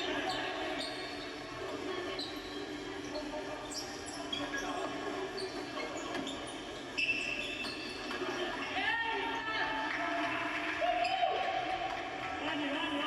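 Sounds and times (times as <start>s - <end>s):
hubbub of voices: 0.0s - 13.0s
shoe squeaks on court: 0.2s - 1.5s, 2.1s - 8.5s.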